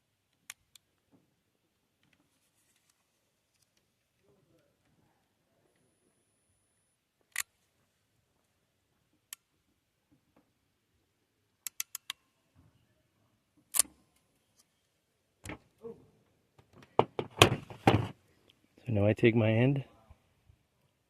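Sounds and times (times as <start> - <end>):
dull knocks: 16.8 - 18.1.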